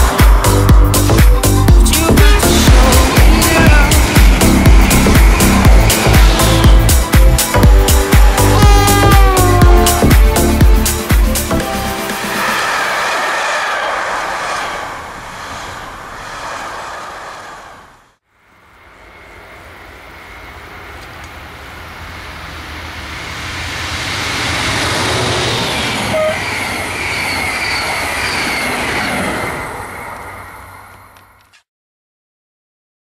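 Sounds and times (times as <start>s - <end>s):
train passing: 0.0s - 31.4s
train wheels squealing: 12.1s - 17.8s, 23.1s - 31.1s.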